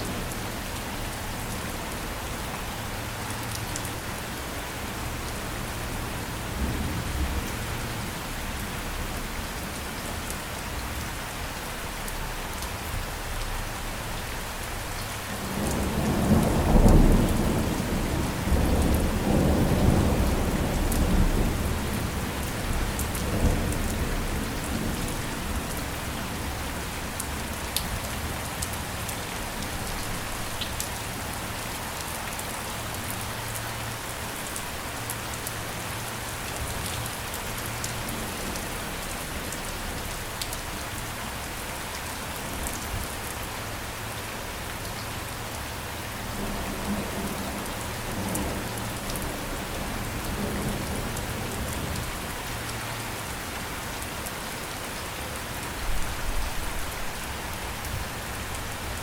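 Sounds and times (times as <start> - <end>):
steady rain: 0.0 - 59.0
low thunder rumble: 15.4 - 25.8.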